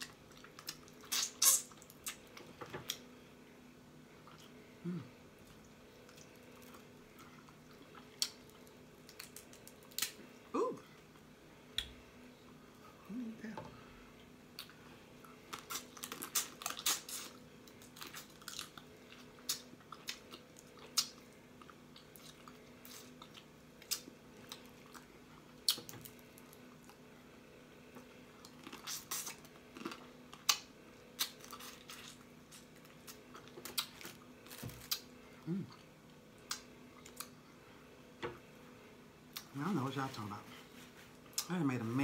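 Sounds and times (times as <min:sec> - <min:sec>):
chewing and lip smacking: 0:05.4 - 0:10.2.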